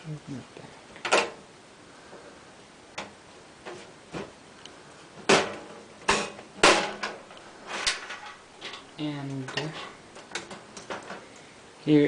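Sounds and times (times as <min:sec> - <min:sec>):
computer case panels clunking: 0:01.0 - 0:01.4, 0:05.2 - 0:11.2.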